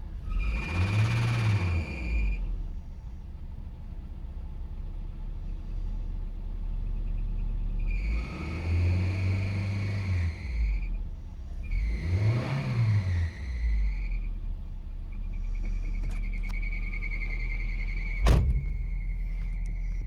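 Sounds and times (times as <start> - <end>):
engine idling and revving: 0.0 - 20.0
drive belt squeaking: 15.1 - 20.0.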